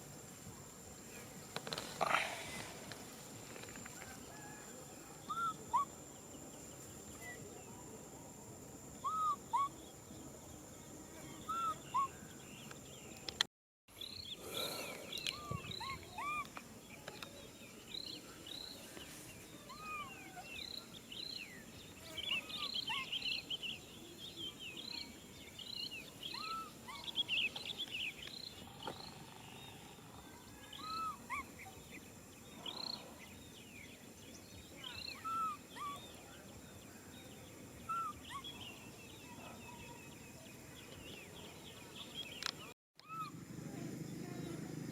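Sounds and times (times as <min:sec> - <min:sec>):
monkeys cooing and squealing: 0:19.7 - 0:20.5, 0:30.8 - 0:31.7, 0:43.0 - 0:43.4.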